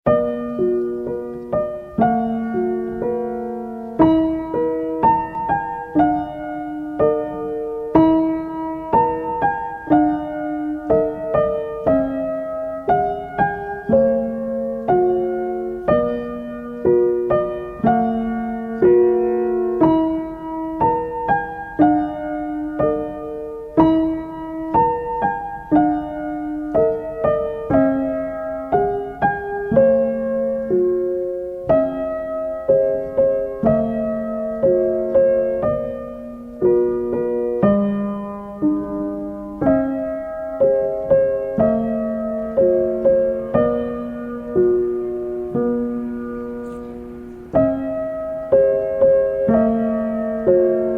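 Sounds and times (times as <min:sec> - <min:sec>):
slow piano chords: 0:00.0 - 0:50.9.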